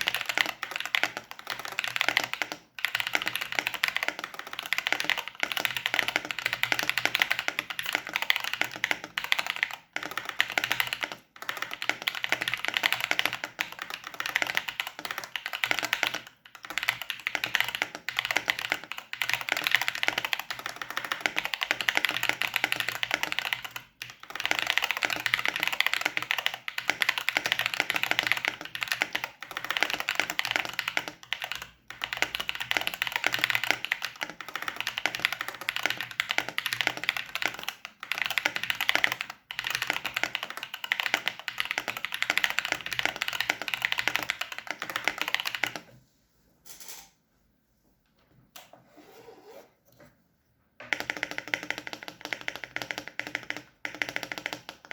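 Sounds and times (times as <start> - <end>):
fast mechanical keyboard typing: 0.0 - 45.9, 50.8 - 54.9.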